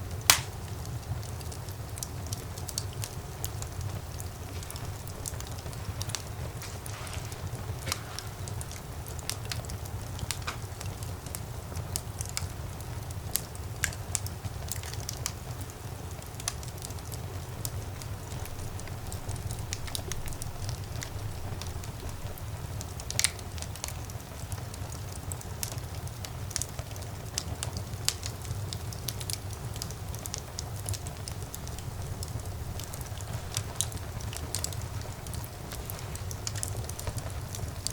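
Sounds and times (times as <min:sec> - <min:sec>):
low fire rumble: 0:00.0 - 0:37.9
wood fire crackling: 0:00.0 - 0:37.9.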